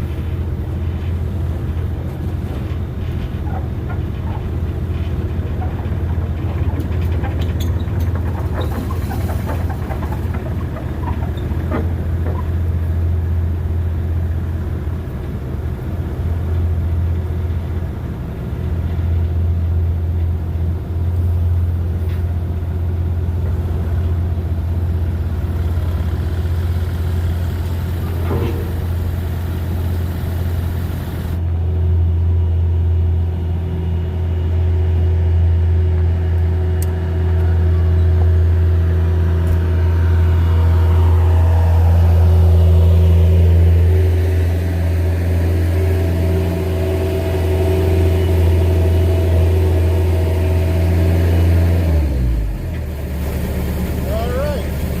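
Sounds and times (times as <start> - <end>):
engine humming: 0.0 - 55.0.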